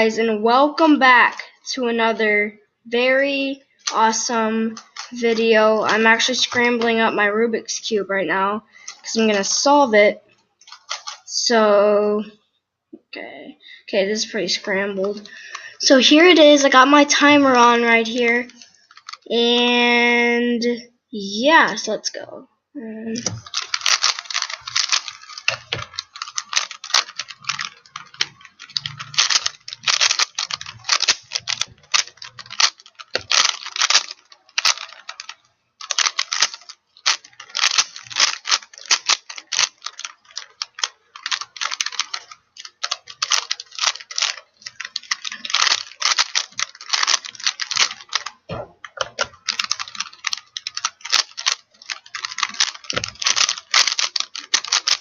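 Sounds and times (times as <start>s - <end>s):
plastic puzzle cube turning clatter: 3.3s - 7.0s, 8.8s - 9.7s, 10.6s - 11.3s, 14.6s - 19.6s, 23.2s - 55.0s.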